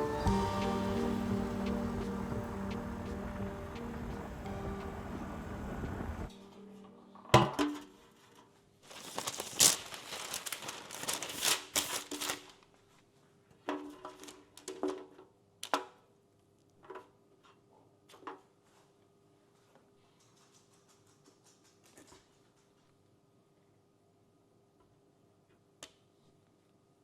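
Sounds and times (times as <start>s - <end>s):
packaging crinkling: 8.9s - 12.6s.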